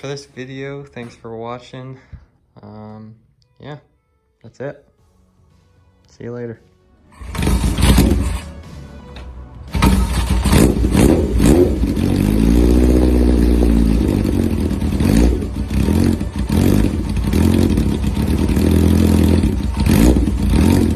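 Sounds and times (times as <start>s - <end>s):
motorcycle engine revving: 7.2s - 8.7s, 9.7s - 20.9s.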